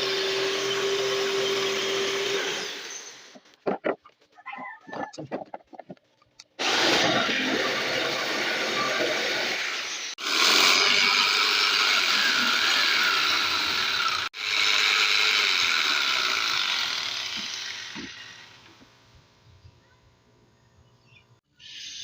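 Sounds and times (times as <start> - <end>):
electric jigsaw buzzing: 0.0 - 3.4, 6.6 - 18.8.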